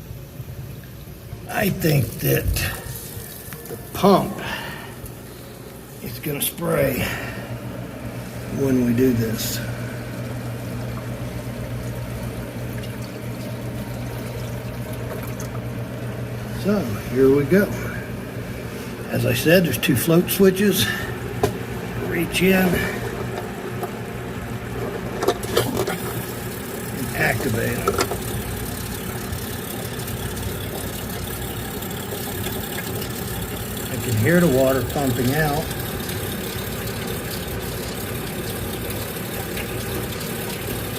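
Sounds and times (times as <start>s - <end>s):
constant low hum: 0.0s - 40.9s
water pouring into bucket: 25.4s - 40.9s.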